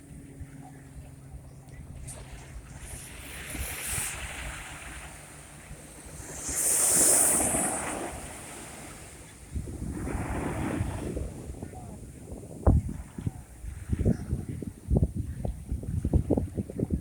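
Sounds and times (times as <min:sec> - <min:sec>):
wind rumble on microphone: 0:00.0 - 0:17.0
sea waves washing onto shore: 0:01.9 - 0:11.6.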